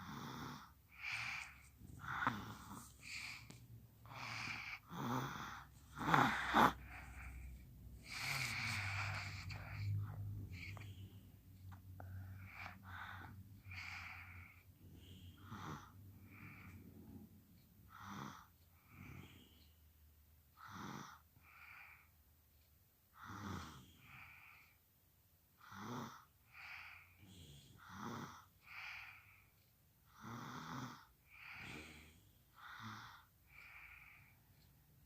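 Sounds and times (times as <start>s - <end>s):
person snoring: 0.0s - 7.4s, 8.0s - 11.0s, 12.0s - 16.7s, 23.2s - 24.6s, 25.6s - 29.2s, 30.1s - 34.3s.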